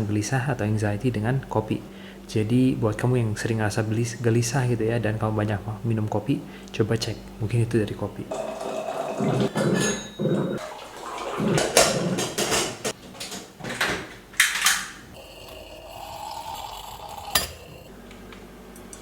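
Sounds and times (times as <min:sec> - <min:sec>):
crockery and utensils clinking: 0:08.3 - 0:13.0.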